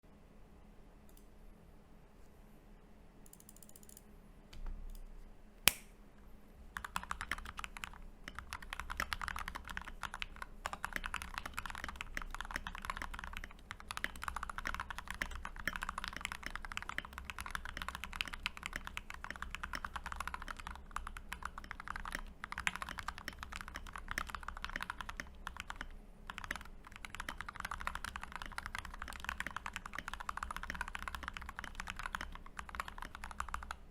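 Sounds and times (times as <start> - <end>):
fast mechanical keyboard typing: 3.3 - 4.0, 6.8 - 33.9
sharp click: 5.6 - 6.0.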